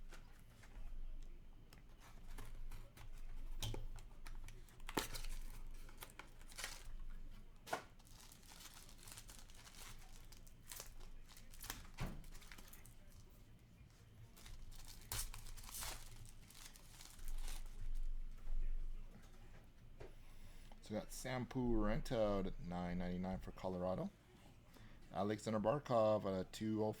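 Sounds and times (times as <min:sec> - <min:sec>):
cards rustling: 0:01.9 - 0:13.4, 0:14.0 - 0:18.2
card packs being torn open: 0:02.3 - 0:13.2, 0:14.4 - 0:18.1.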